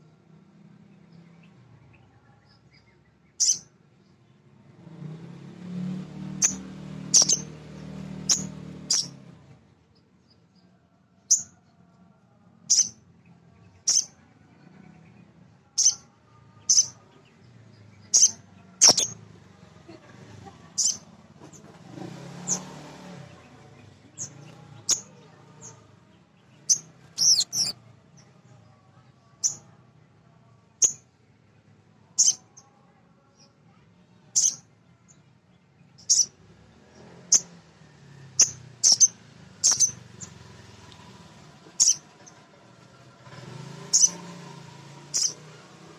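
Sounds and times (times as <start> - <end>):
bird chirping high and sharp: 3.4 - 3.7, 6.4 - 9.2, 11.3 - 11.5, 12.7 - 13.0, 13.9 - 14.1, 15.8 - 16.0, 16.7 - 17.0, 18.1 - 19.2, 20.8 - 21.0, 26.7 - 27.8, 32.2 - 32.4, 34.4 - 34.6, 36.0 - 36.3, 38.4 - 40.0, 41.8 - 42.0, 43.9 - 44.2, 45.1 - 45.4.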